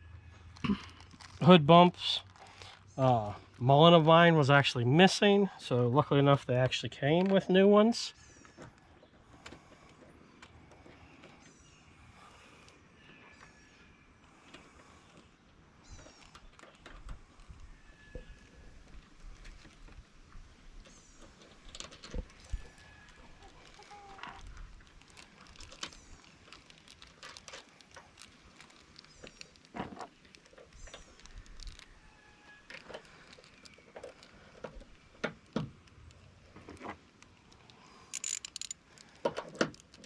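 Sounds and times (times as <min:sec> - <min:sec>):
hand tools and metal latch clicking: 0:37.6 - 0:40.0.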